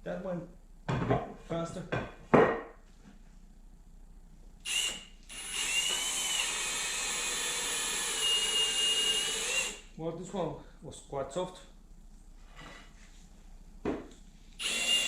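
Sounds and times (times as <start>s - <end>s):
power drill boring through wood: 4.7s - 9.9s, 14.6s - 15.0s.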